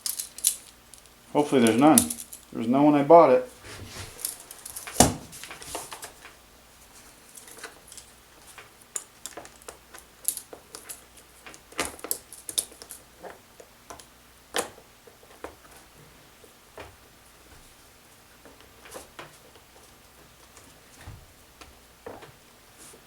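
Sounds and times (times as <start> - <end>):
chainsaw parts clicking and clinking: 0.0 - 2.5, 4.2 - 5.6.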